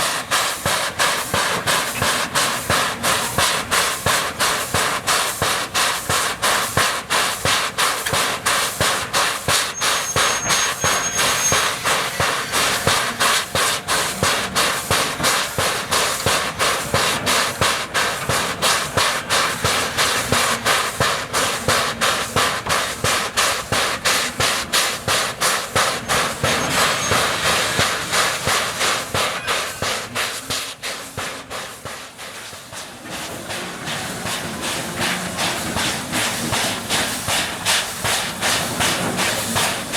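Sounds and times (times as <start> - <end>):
steam locomotive chuffing: 0.0 - 39.9.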